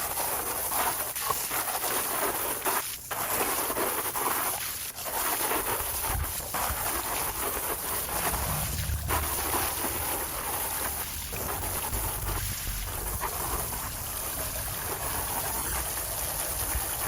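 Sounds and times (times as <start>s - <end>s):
hose water spraying: 0.0s - 17.0s.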